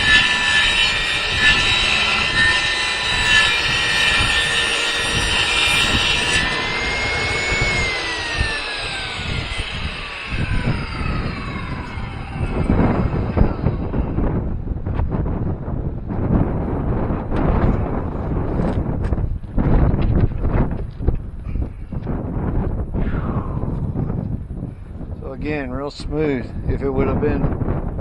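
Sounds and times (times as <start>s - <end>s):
table saw whine: 0.0s - 15.6s
wind buffeting microphone: 0.0s - 28.0s.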